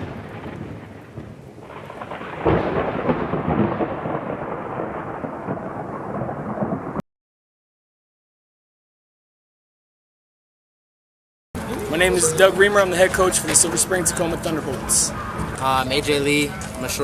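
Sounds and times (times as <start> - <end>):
rain: 0.0 - 7.0, 11.6 - 17.0
sharp thunder crack: 0.0 - 7.0
thunder rumbling: 0.0 - 7.0, 11.6 - 17.0.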